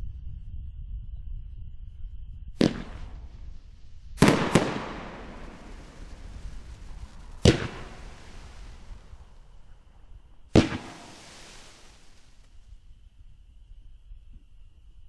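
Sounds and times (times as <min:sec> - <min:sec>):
fireworks bangs: 0:02.6 - 0:03.5, 0:04.2 - 0:12.6
crackling echo: 0:02.6 - 0:12.9.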